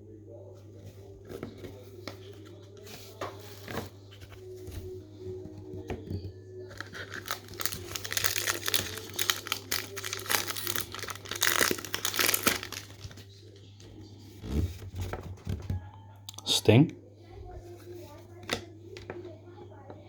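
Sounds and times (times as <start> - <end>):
wrapper crinkling and tearing: 6.7 - 13.2.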